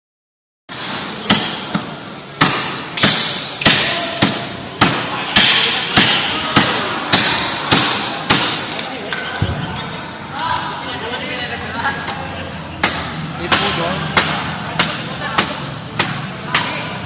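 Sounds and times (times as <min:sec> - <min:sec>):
machete chopping strikes: 0:00.7 - 0:08.7, 0:12.8 - 0:16.9.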